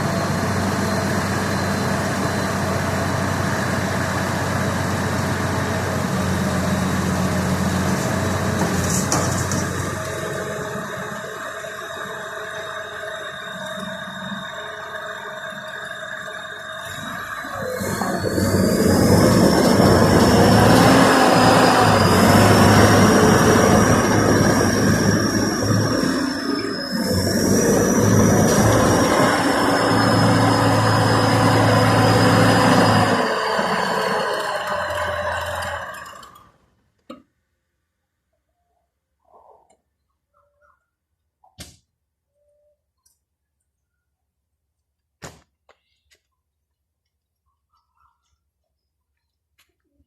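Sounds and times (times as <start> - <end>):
combine harvester engine running: 0.0 - 36.5
high machine whine: 0.0 - 36.5.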